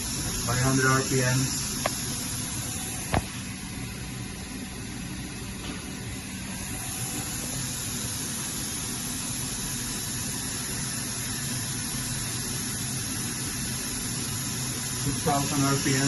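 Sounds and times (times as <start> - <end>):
machine spindle hissing and humming: 0.0 - 16.0.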